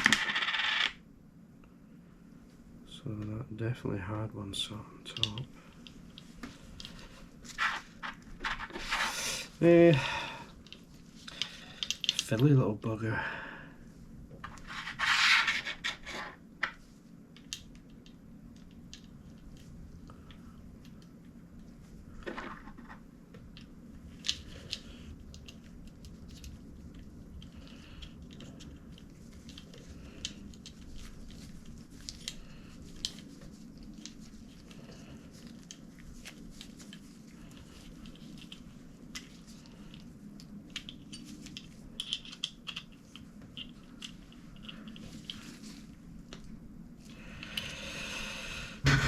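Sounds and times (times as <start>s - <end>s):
steady low hum: 0.0s - 49.0s
small clicks and taps of parts: 5.1s - 7.0s, 10.6s - 12.5s, 16.6s - 21.7s, 22.3s - 34.3s, 35.4s - 45.5s.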